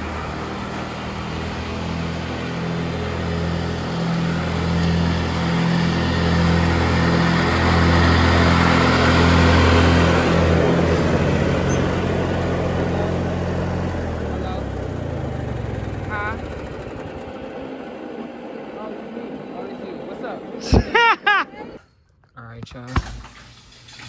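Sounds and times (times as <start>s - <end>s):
small gasoline engine running: 0.0s - 21.0s.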